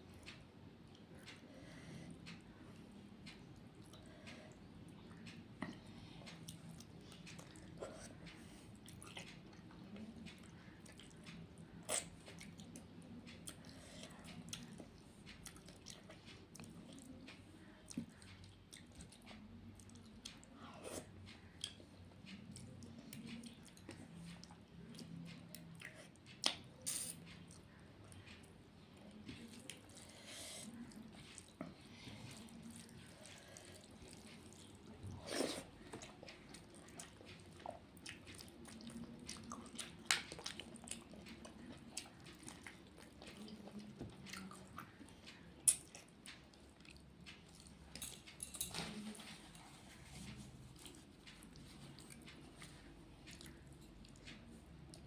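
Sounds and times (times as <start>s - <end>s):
person chewing food: 0.0s - 55.0s.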